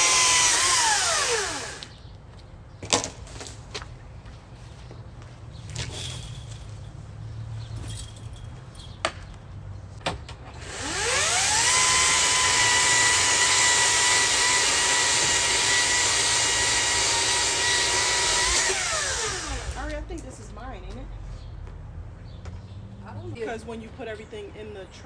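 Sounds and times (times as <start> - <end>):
electric motor tool whining: 0.0 - 2.0, 10.6 - 20.0.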